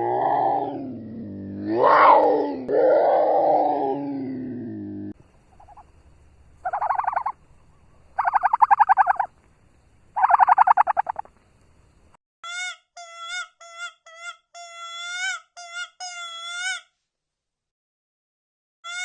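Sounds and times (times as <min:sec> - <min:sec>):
animal rattling calls: 0:05.5 - 0:09.4, 0:10.2 - 0:11.4
high-pitched bending calls: 0:06.6 - 0:07.4, 0:08.2 - 0:09.3, 0:10.2 - 0:11.3.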